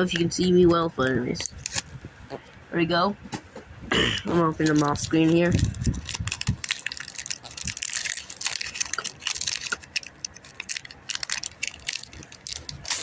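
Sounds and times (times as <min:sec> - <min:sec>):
plastic packaging crinkling: 0:01.4 - 0:01.9, 0:04.4 - 0:13.0.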